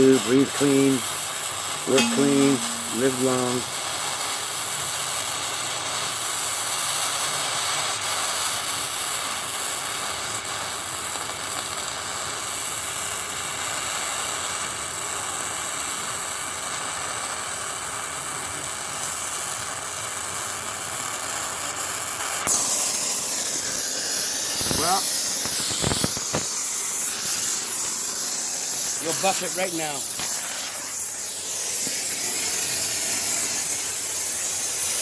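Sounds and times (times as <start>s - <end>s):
plasma torch hissing: 22.5s - 35.0s.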